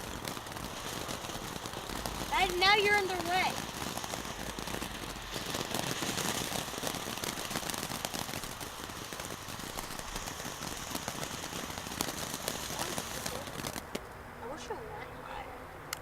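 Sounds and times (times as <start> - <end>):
ground firework crackling: 0.0 - 16.0.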